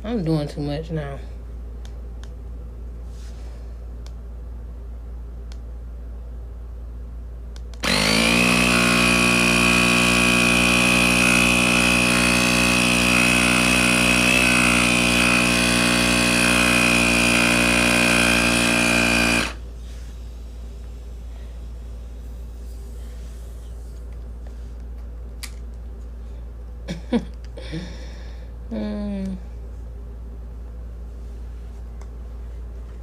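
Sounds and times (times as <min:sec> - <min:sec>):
tire inflator pump whining: 0:07.8 - 0:19.6.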